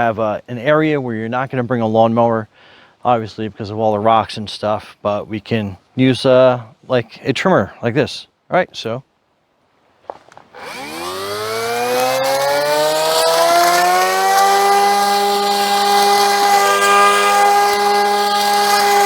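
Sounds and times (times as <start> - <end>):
grass trimmer motor whining: 10.5 - 19.0.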